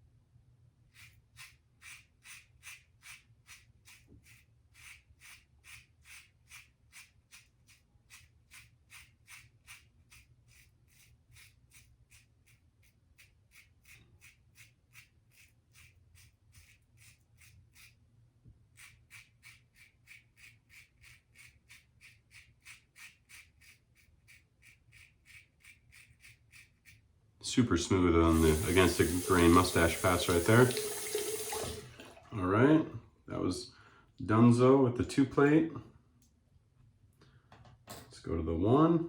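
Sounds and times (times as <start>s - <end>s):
razor scraping stubble: 18.7s - 27.0s, 28.2s - 31.8s.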